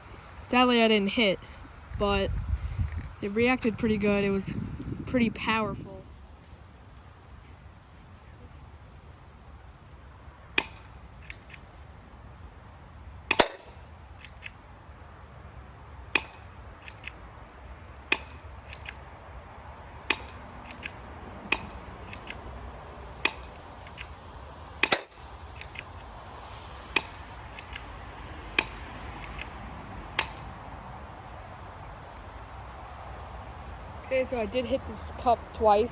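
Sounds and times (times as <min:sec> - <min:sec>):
airsoft pistol shots: 0:13.3 - 0:13.8, 0:24.8 - 0:25.3.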